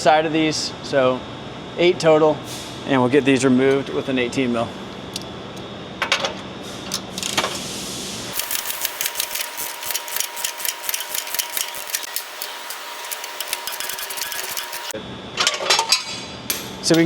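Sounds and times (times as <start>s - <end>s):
ratchet wrench clicking: 8.4s - 14.9s
wrench clanks: 10.4s - 17.0s.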